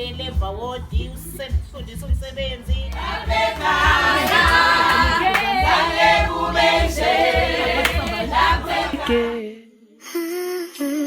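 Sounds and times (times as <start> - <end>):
low thumping beat: 0.3 - 9.2
choir singing: 2.9 - 9.4.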